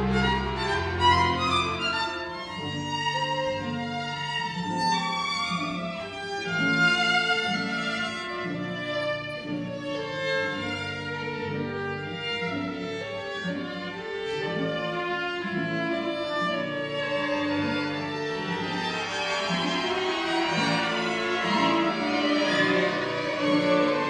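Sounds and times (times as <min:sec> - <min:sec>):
string orchestra playing: 0:00.0 - 0:24.0.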